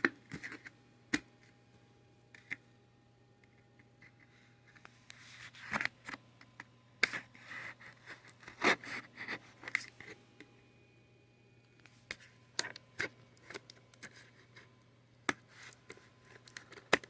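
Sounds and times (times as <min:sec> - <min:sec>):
toy packaging rustling and scraping: 0:00.0 - 0:00.8, 0:03.5 - 0:10.2, 0:11.8 - 0:14.8, 0:15.4 - 0:17.0.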